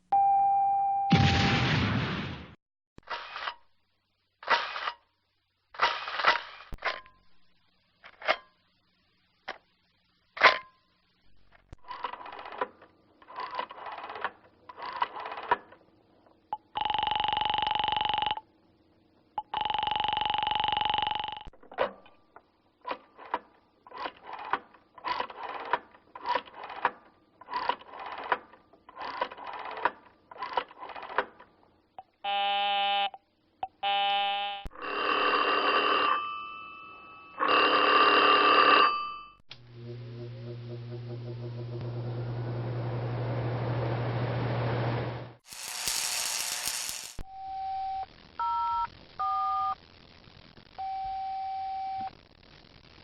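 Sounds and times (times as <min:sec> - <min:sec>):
phone dialing bursts: 0:16.6 - 0:18.4
steady electronic phone tones: 0:16.6 - 0:18.4, 0:19.4 - 0:21.5, 0:33.8 - 0:39.4
buzzing phone ring: 0:16.7 - 0:18.4, 0:19.4 - 0:21.5, 0:33.8 - 0:39.4, 0:45.5 - 0:47.2.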